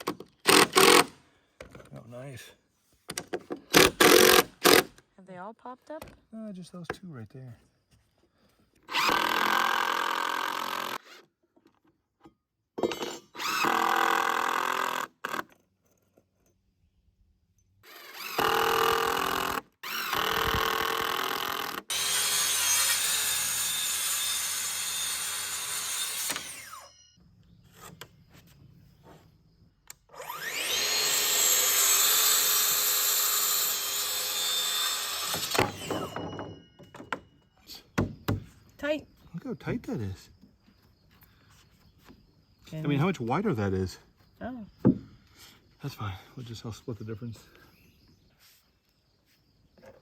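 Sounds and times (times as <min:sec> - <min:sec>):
cordless drill driving screws: 0:00.0 - 0:01.2, 0:03.7 - 0:05.0, 0:08.8 - 0:11.3, 0:13.4 - 0:15.6, 0:17.8 - 0:27.1, 0:30.0 - 0:36.5.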